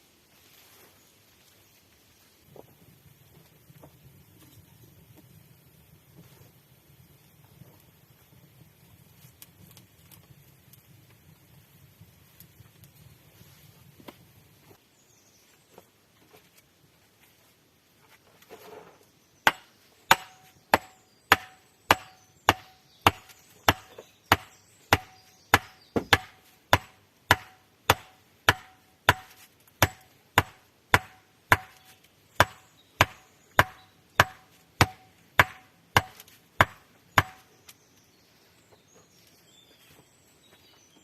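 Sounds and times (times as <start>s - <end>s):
metal tool striking wood: 19.4s - 37.5s.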